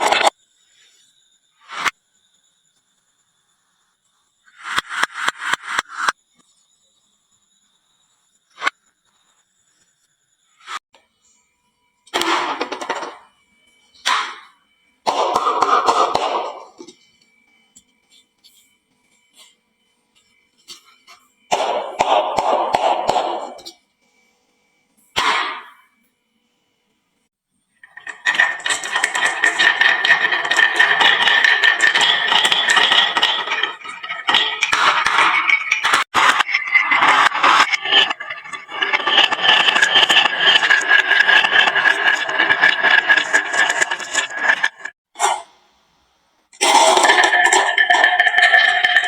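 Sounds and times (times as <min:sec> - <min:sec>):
marbles clattering down wooden slope: 0:27.9 - 0:44.9, 0:46.7 - 0:49.0.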